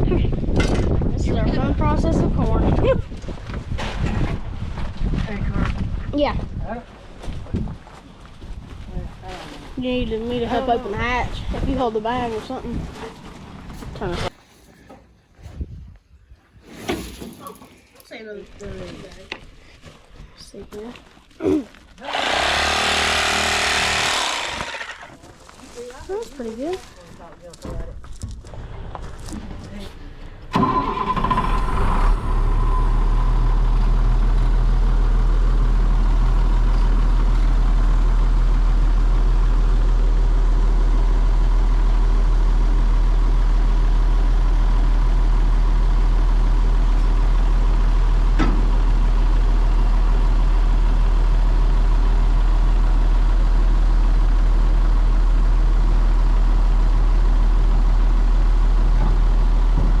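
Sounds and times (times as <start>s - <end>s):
engine running: 22.0s - 27.0s, 27.6s - 60.0s.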